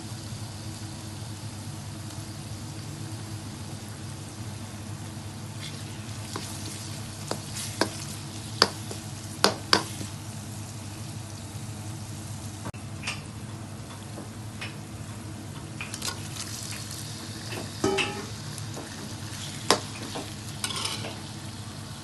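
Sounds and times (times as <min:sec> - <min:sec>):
food sizzling in a pan: 0:05.2 - 0:12.6, 0:15.8 - 0:22.0
utensil clacking against pan: 0:07.2 - 0:10.1, 0:17.5 - 0:19.1.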